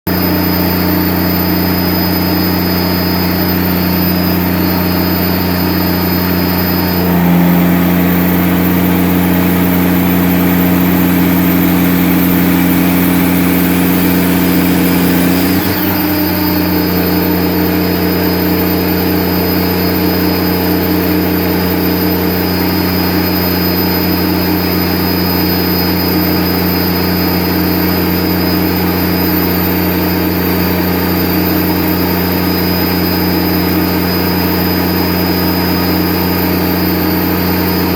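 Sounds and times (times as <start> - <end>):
diesel generator engine running: 0.1 - 37.9.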